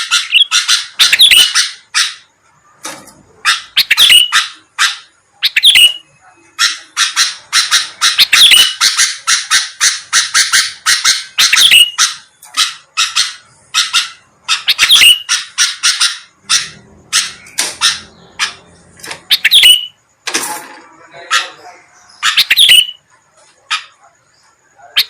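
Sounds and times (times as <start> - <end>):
bird chirping harshly: 0.0 - 2.4, 3.3 - 20.0, 21.1 - 25.0.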